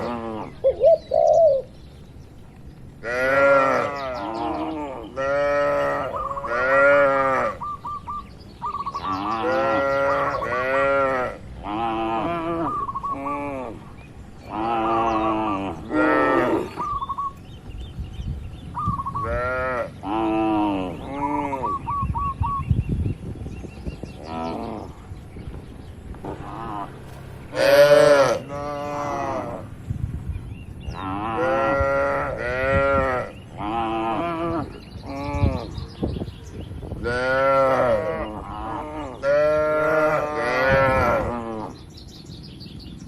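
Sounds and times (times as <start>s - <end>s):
cattle mooing: 3.0s - 7.6s, 14.5s - 16.8s, 26.3s - 29.7s, 30.9s - 35.8s, 37.0s - 41.8s.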